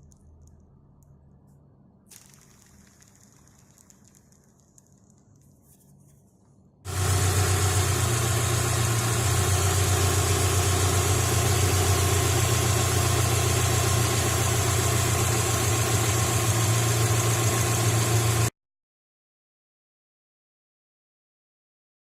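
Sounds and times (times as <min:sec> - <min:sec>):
car engine idling: 0:06.9 - 0:18.5.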